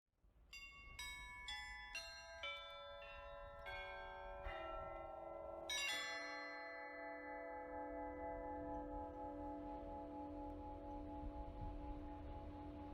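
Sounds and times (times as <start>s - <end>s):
church bells ringing in falling run: 0.5s - 9.7s.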